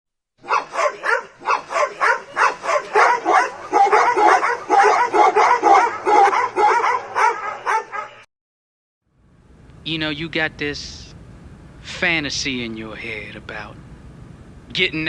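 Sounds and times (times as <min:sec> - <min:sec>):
dog barking rapidly: 0:00.4 - 0:08.3.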